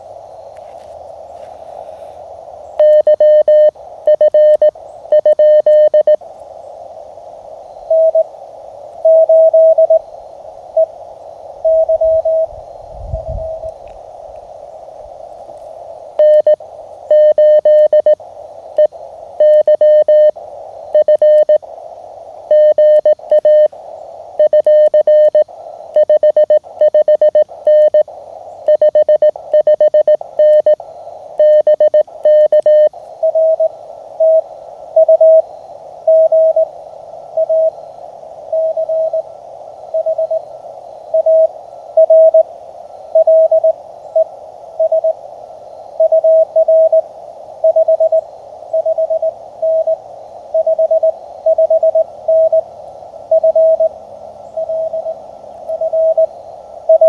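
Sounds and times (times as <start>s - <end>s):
receiver hiss: 0.0s - 57.0s
morse code tones: 2.8s - 6.2s, 9.0s - 10.0s, 11.6s - 12.5s, 16.2s - 18.2s, 18.8s - 21.6s, 22.5s - 23.7s, 24.4s - 25.4s, 26.0s - 28.0s, 28.7s - 30.8s, 31.4s - 34.4s, 41.2s - 42.4s, 43.2s - 45.2s, 50.6s - 52.6s, 53.3s - 53.9s, 54.6s - 56.3s.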